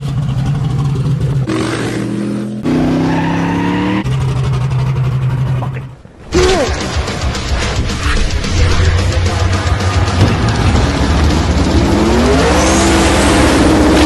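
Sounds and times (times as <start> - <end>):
race car engines revving high: 8.6 - 14.0.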